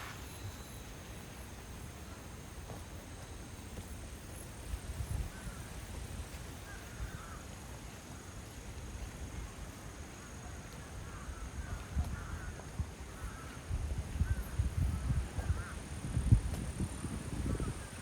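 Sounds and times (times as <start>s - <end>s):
gusty wind rumbling on microphone: 3.9s - 7.9s, 11.0s - 18.0s
faint bird calls: 5.1s - 15.9s.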